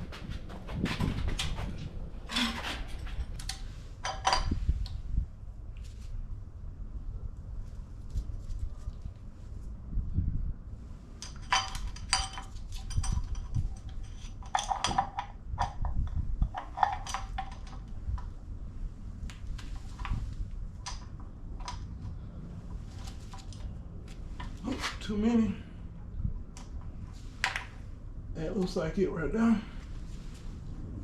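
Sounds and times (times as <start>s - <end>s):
tools and metal parts clanking: 0.0s - 4.9s, 11.2s - 18.3s.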